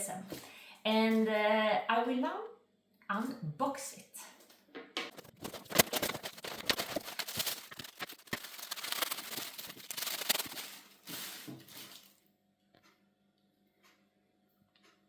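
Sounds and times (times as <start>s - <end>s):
packaging crackling and tearing: 5.1s - 12.1s.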